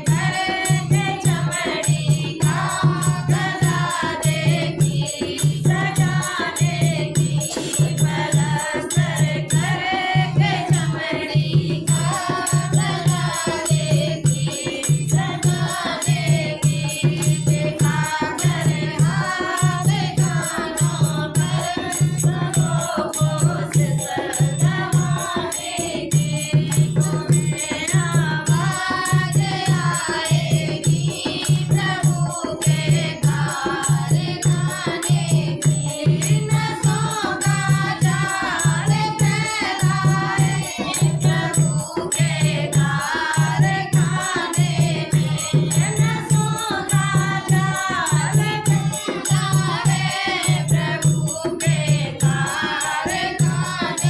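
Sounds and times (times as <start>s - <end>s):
group singing: 0.0s - 54.0s
rattling percussion: 0.0s - 54.0s.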